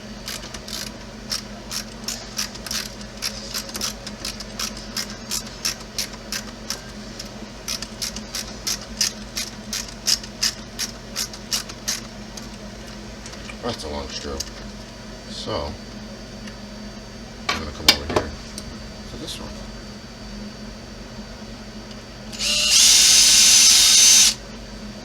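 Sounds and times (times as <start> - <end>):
steady low hum: 0.0 - 25.0
small parts clicking: 0.2 - 12.1, 22.4 - 24.4.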